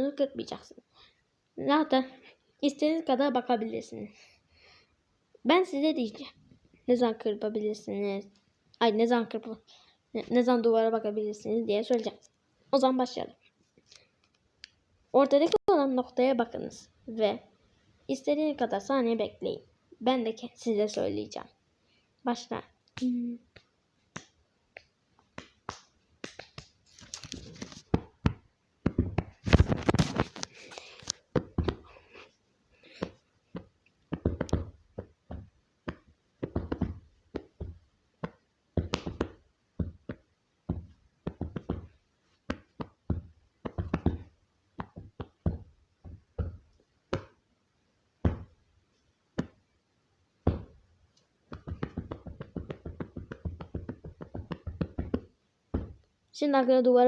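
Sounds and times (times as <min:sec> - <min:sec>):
rustling handling noise: 0:26.6 - 0:28.1, 0:29.2 - 0:32.4
tapping and knocking: 0:33.0 - 0:47.3, 0:51.5 - 0:56.0.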